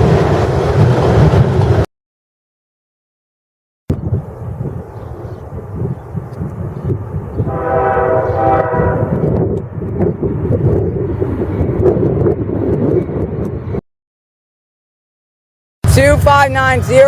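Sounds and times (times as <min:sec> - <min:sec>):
freight train rumbling: 0:00.0 - 0:01.9, 0:03.9 - 0:13.8, 0:15.8 - 0:17.0
locomotive horn blast: 0:07.4 - 0:09.4.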